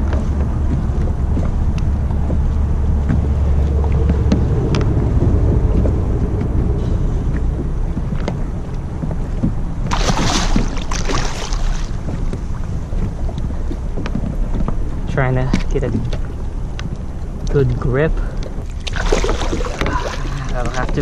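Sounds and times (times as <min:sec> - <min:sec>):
water splashing: 0:00.0 - 0:14.0, 0:18.5 - 0:21.0
wind buffeting microphone: 0:00.0 - 0:21.0.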